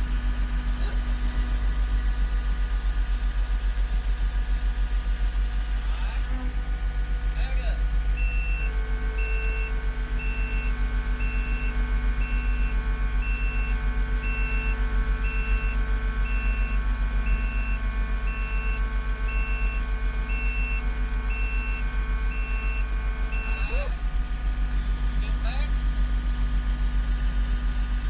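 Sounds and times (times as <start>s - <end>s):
diesel engine running: 0.0s - 28.0s
backup alarm beeping: 8.2s - 24.0s.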